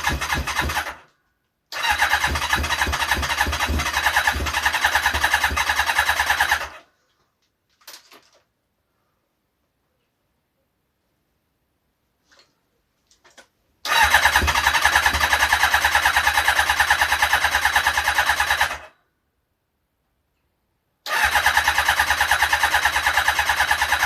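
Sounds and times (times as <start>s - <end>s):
starter cranking engine: 0.0s - 6.8s, 13.8s - 18.9s, 21.1s - 24.0s.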